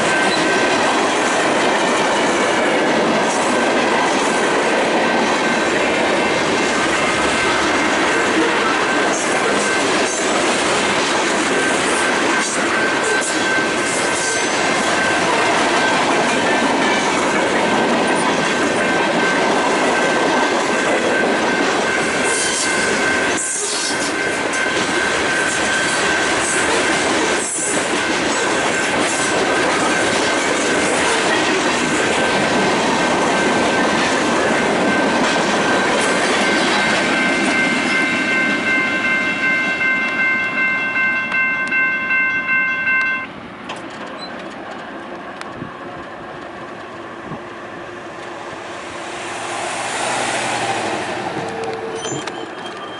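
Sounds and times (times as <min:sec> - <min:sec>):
wheels clickety-clack: 0:00.0 - 0:38.6
train cars rumbling past: 0:00.0 - 0:52.9
wheels squealing: 0:49.2 - 0:52.9.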